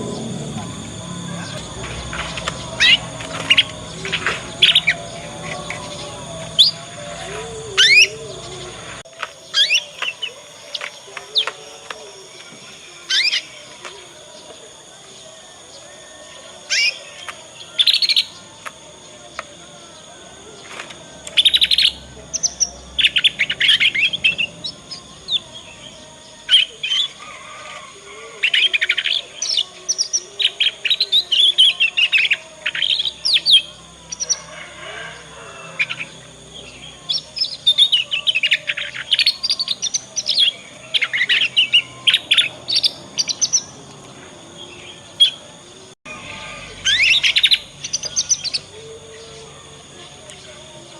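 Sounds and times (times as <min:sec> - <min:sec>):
canary twittering: 0:00.0 - 0:09.0.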